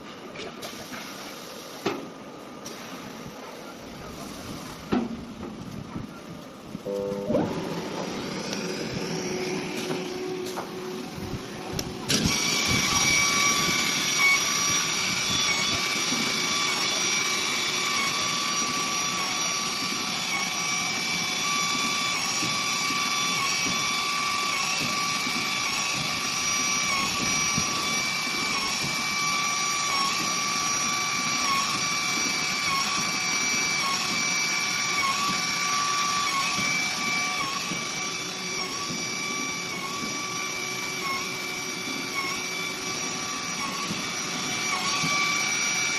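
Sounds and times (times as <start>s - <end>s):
router spindle whining: 6.4s - 45.9s.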